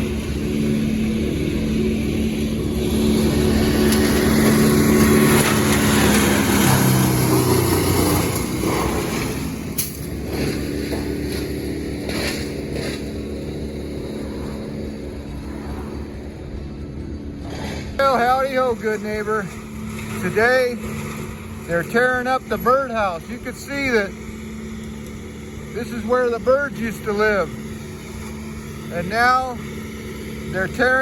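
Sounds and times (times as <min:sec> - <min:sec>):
heavy engine running: 0:00.0 - 0:31.0.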